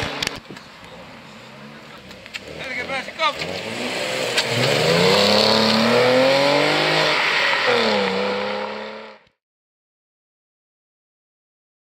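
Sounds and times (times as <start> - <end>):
car engine accelerating: 0.0 - 9.3.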